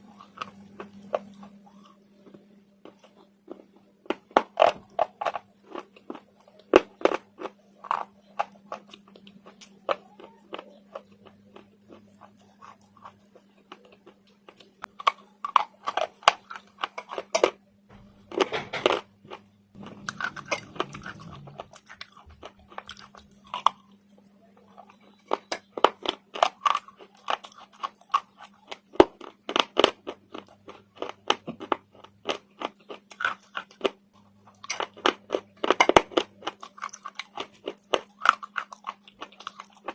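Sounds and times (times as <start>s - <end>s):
slate being chewed crunching: 0.0s - 17.6s, 18.3s - 39.9s
faint steady hum: 0.0s - 39.9s.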